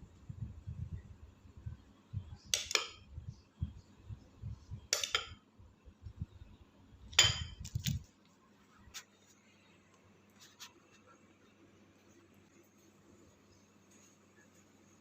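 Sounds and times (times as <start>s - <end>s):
metal utensils clinking on dishes: 5.0s - 5.4s.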